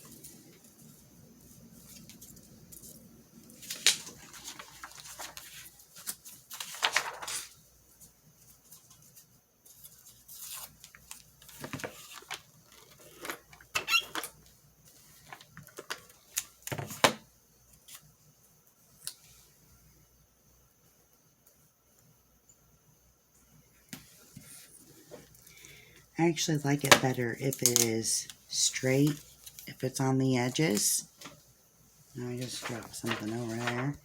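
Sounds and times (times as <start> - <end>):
paper crinkling and rustling: 0.0 - 17.2, 32.1 - 34.0.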